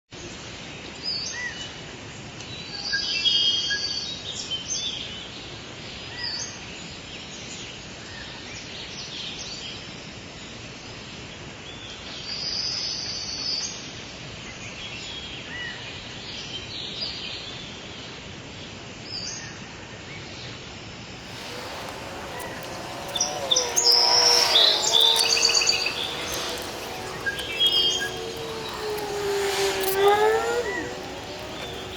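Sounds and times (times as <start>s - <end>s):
layered held tones: 21.2s - 31.9s
small birds chirping: 21.2s - 31.9s.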